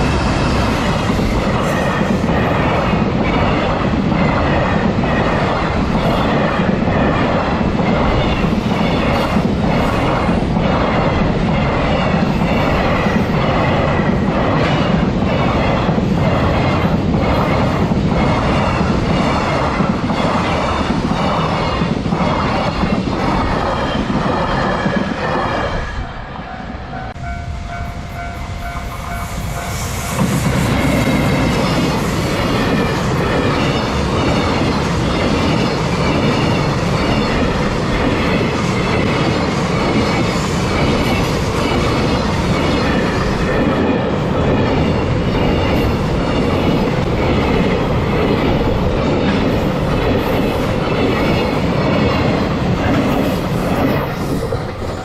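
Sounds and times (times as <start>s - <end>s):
level crossing warning bell: 27.0s - 29.8s.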